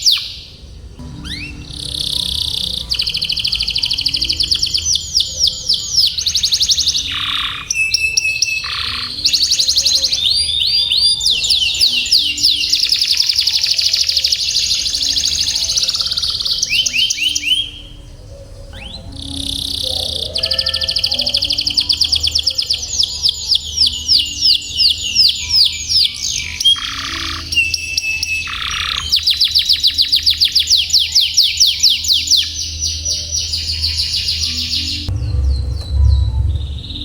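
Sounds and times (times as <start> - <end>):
canary singing trills: 0.0 - 37.0.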